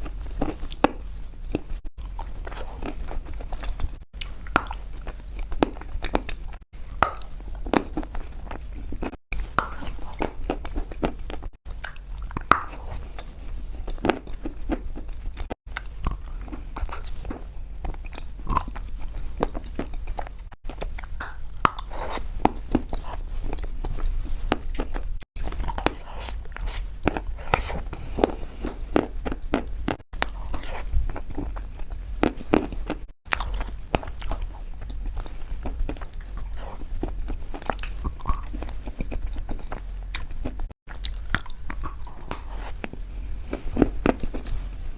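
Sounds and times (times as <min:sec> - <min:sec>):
person chewing chalk: 0:00.0 - 0:44.7.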